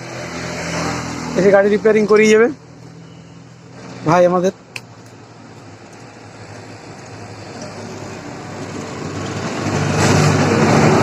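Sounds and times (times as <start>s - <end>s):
motor vehicle approaching: 0.0s - 11.0s.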